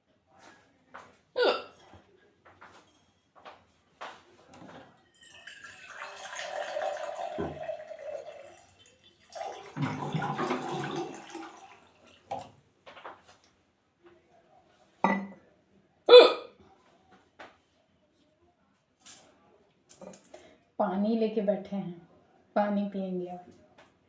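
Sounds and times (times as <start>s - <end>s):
person hiccuping: 1.4s - 1.8s, 16.1s - 16.6s
water poured into a glass: 5.2s - 12.5s.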